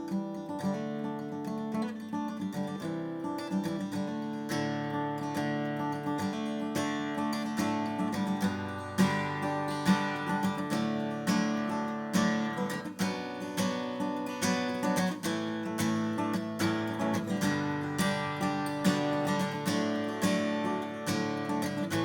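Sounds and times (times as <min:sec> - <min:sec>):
acoustic guitar strummed: 0:00.0 - 0:22.0.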